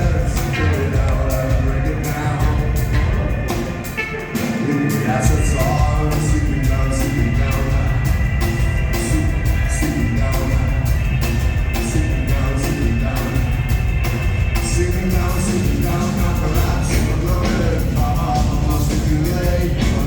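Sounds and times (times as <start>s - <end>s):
person singing: 0.0s - 20.0s
rock band playing live: 0.0s - 20.0s.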